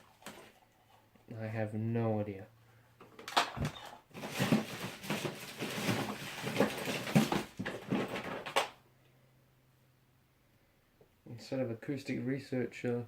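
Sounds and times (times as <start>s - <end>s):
cables rummaged in cardboard box: 3.6s - 8.7s.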